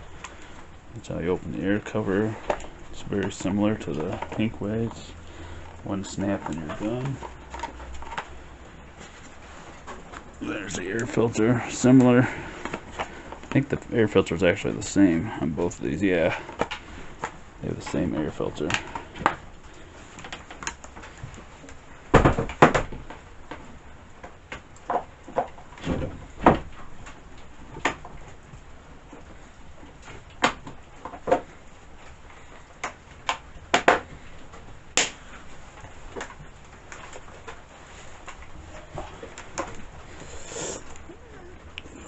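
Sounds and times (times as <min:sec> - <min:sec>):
plastic parts clicking and knocking: 0:02.2 - 0:05.0, 0:16.4 - 0:28.3, 0:30.0 - 0:40.0.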